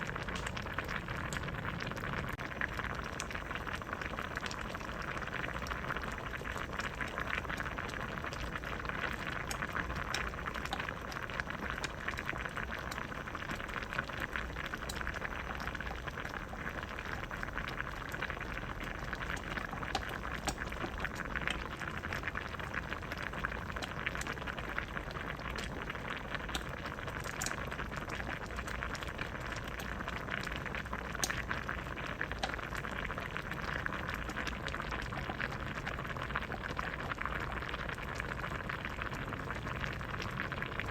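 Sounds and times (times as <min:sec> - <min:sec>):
soup boiling and bubbling: 0:00.0 - 0:40.9.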